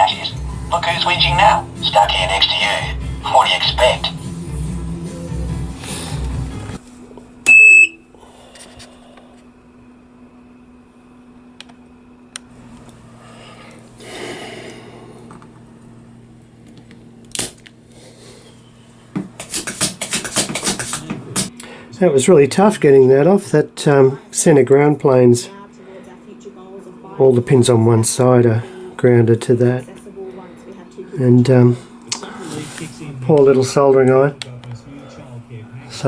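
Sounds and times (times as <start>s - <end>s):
faint electrical hum: 6.8s - 36.0s
high electronic beep: 7.5s - 8.0s.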